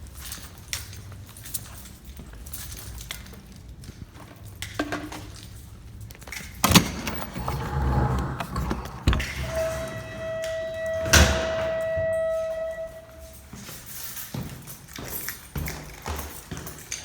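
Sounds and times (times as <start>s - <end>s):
rumbling and shuffling: 6.6s - 13.7s.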